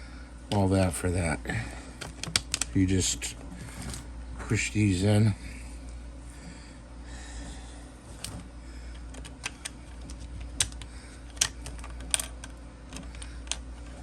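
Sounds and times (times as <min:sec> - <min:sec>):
steady low hum: 0:00.0 - 0:14.0
plastic parts clicking into place: 0:02.0 - 0:02.7, 0:09.0 - 0:13.7.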